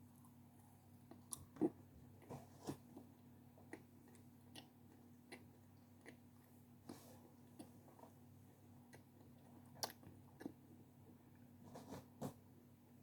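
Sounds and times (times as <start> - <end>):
chewing mouth clicks and crunches: 9.8 - 10.6.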